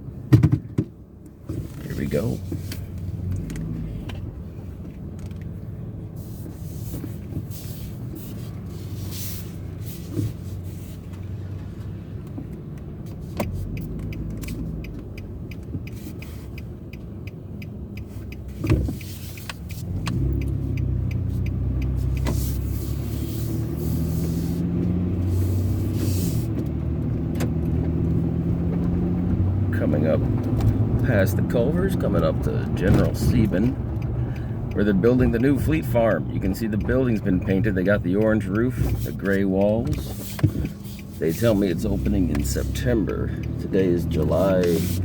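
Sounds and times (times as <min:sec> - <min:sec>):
car engine and road noise: 0:00.0 - 0:45.0.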